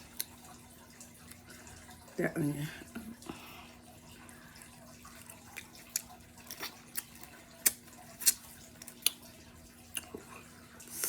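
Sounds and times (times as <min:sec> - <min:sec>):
wet eating sounds: 0:00.0 - 0:11.0.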